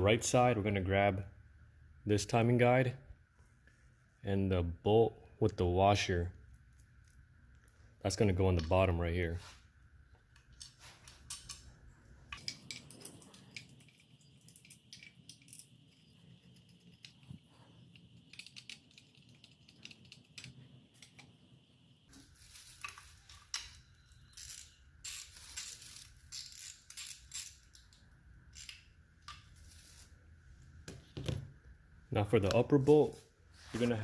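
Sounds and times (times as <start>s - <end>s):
faint metallic clicks and clinks: 10.3s - 21.4s.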